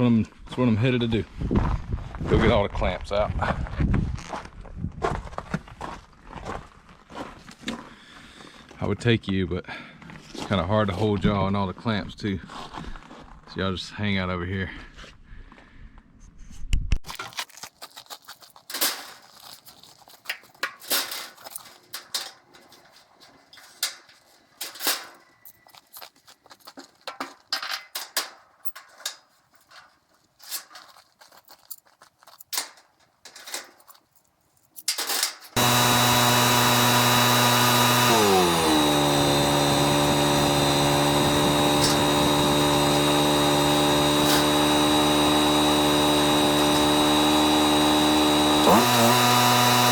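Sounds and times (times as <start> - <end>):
loud machine running: 35.6 - 49.9.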